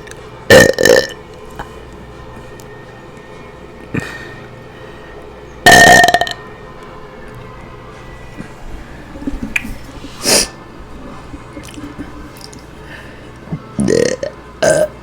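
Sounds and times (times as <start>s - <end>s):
woman burping: 0.5s - 1.2s, 5.6s - 6.4s, 13.8s - 14.9s.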